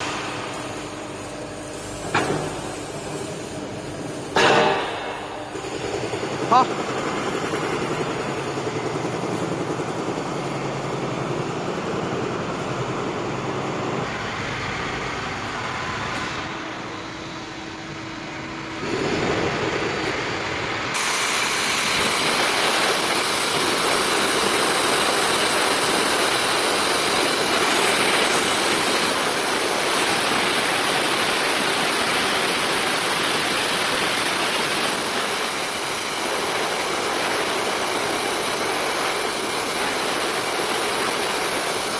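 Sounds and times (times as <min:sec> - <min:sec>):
circular saw machine running: 0:00.0 - 0:41.9
loud even hiss: 0:18.8 - 0:41.9.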